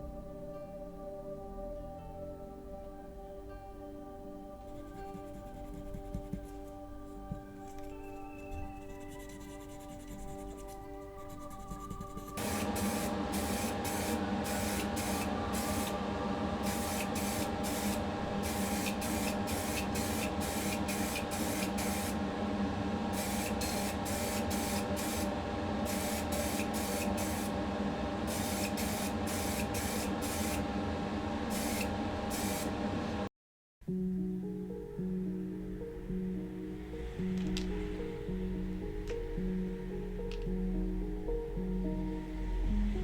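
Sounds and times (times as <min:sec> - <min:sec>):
steady hum: 0:04.6 - 0:33.3
spray paint hissing bursts: 0:11.9 - 0:16.0, 0:16.6 - 0:22.2, 0:23.2 - 0:25.3, 0:25.9 - 0:27.5, 0:28.3 - 0:30.6, 0:31.5 - 0:32.7.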